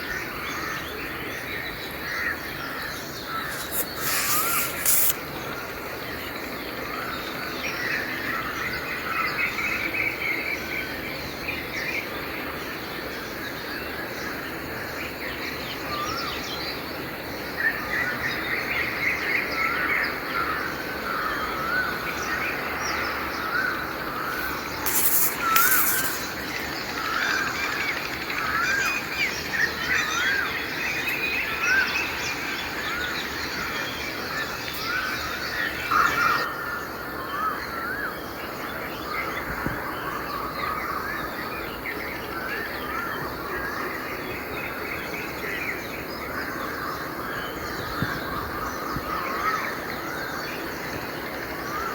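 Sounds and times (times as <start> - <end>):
songbirds chirping and warbling: 0.0 - 51.9
brief harsh noises: 3.4 - 5.2, 24.3 - 27.4
steady background hiss: 20.3 - 36.5.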